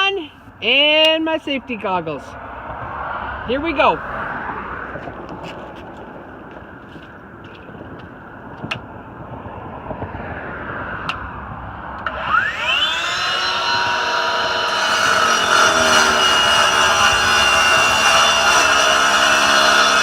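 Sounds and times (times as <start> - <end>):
concrete saw whining: 12.0 - 20.0.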